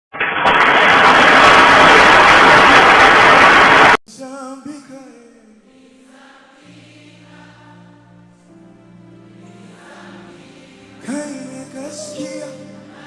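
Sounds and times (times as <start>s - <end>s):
loud static hiss: 0.1s - 4.0s
soft worship singing: 4.1s - 13.0s.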